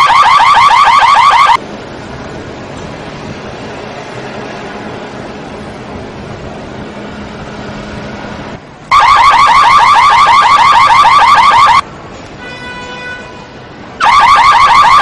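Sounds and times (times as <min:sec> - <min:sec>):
car alarm siren chirping: 0:00.0 - 0:01.6, 0:08.9 - 0:11.8, 0:14.0 - 0:15.0.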